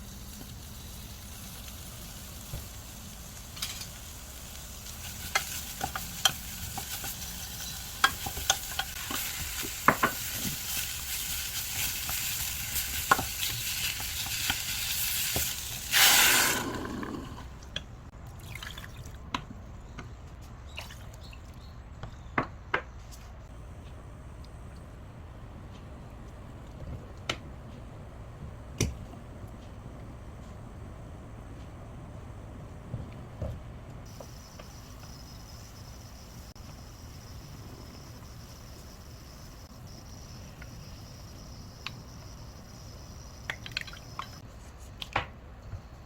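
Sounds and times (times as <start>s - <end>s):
food sizzling in a frying pan: 0.0s - 17.0s.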